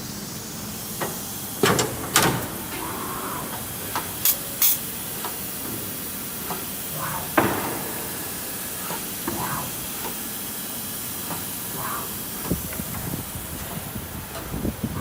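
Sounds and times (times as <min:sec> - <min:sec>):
machine running with steady hiss: 0:00.0 - 0:15.0.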